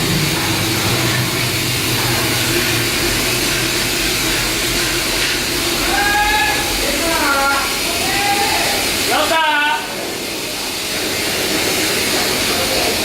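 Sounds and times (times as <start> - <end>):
machinery humming: 0.0 - 8.1.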